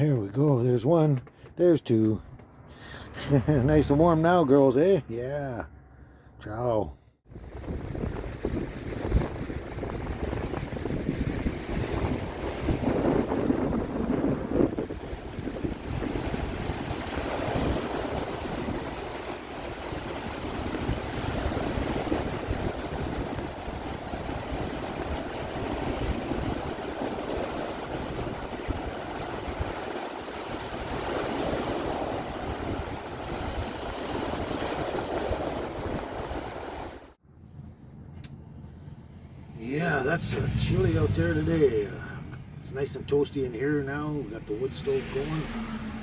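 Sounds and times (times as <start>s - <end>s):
wind buffeting microphone: 7.3s - 37.1s
ocean surf washing in: 7.3s - 37.2s, 38.8s - 46.0s.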